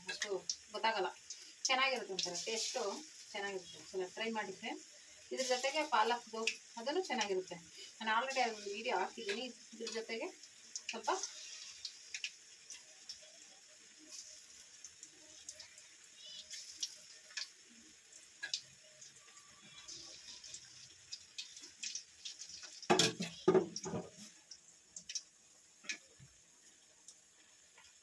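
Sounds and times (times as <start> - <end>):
fritters sizzling in hot oil: 0.0 - 28.0.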